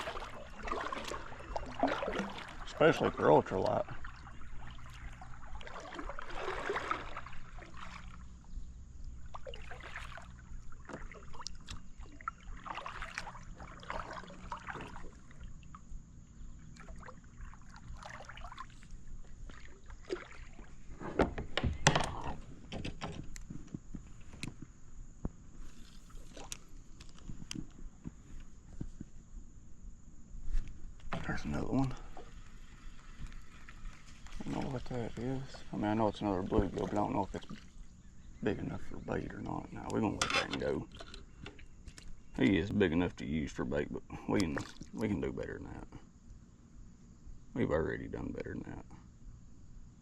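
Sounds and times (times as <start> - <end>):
water lapping: 0.0 - 21.0, 31.2 - 42.9, 43.5 - 45.9.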